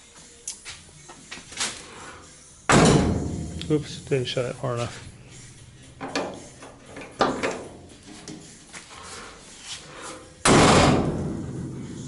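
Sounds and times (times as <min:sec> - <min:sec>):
car door slamming shut: 0:02.7 - 0:03.4, 0:10.4 - 0:11.4.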